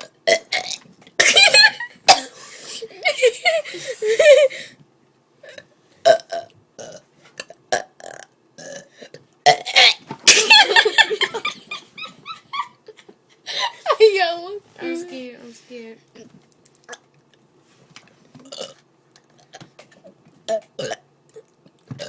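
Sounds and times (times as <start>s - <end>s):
person burping: 0.0s - 1.3s, 5.4s - 10.1s, 18.4s - 18.8s, 20.5s - 22.0s.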